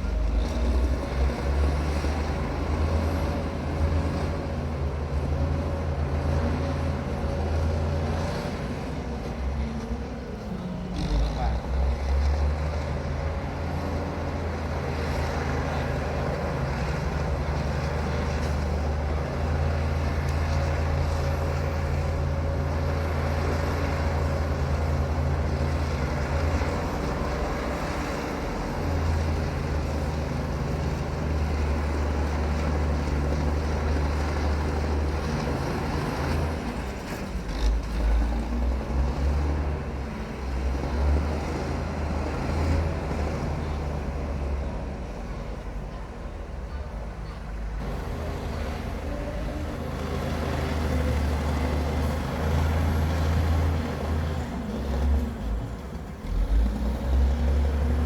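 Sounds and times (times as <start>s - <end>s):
bulldozer diesel engine droning: 0.0s - 58.0s.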